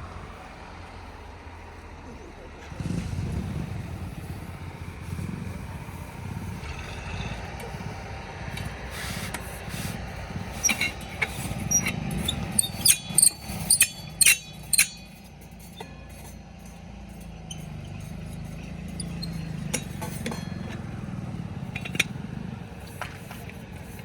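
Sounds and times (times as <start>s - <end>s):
diesel engine running: 0.0s - 24.0s
sharp metallic clanks: 10.2s - 22.4s.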